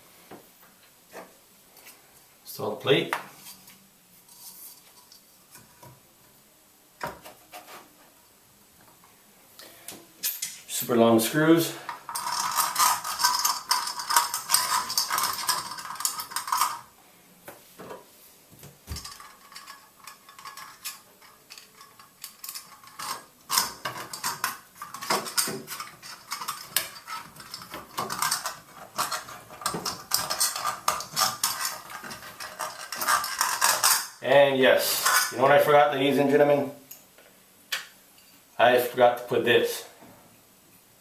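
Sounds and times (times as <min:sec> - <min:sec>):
small metal parts clinking: 0:11.9 - 0:16.9, 0:18.9 - 0:34.2, 0:34.9 - 0:35.4.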